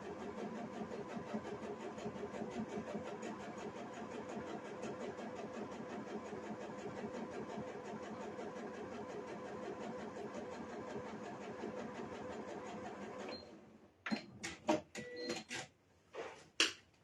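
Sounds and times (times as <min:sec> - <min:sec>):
sewing machine running: 0:00.0 - 0:13.4.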